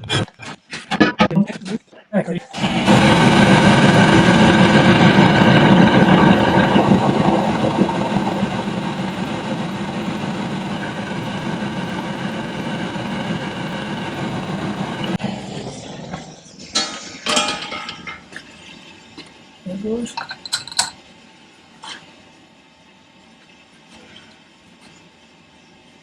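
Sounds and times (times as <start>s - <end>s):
gas torch flame burning: 2.5s - 18.4s.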